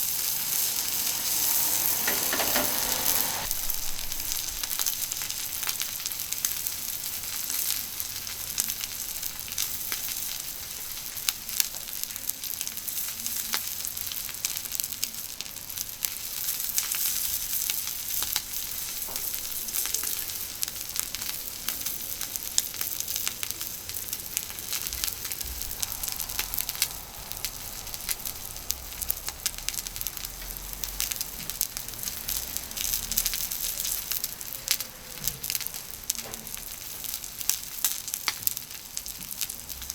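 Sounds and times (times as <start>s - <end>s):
steak sizzling on griddle: 0.0s - 39.9s.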